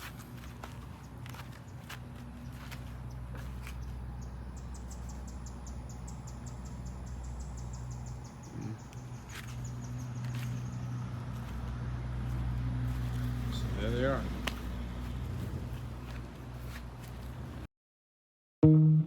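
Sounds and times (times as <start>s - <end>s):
steady low hum: 0.0s - 17.7s
insect chirping: 3.6s - 11.0s.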